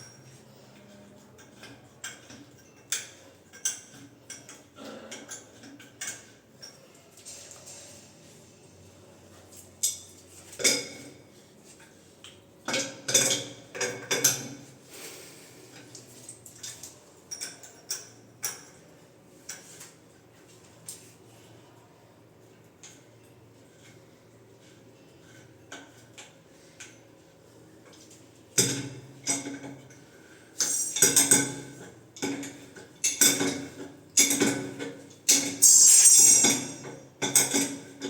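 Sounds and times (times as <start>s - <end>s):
metallic clinks of tools: 35.3s - 36.9s.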